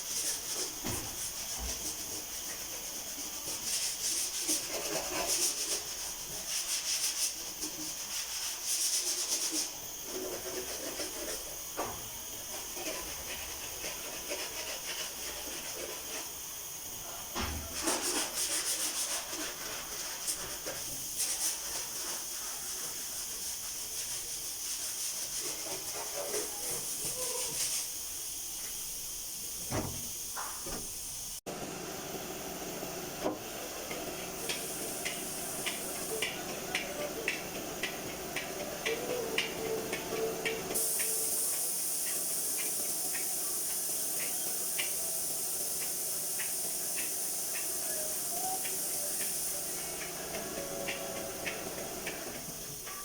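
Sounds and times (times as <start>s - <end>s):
sanding strokes: 0.0s - 11.6s, 12.5s - 16.4s, 17.7s - 26.4s
high hiss: 0.0s - 53.0s.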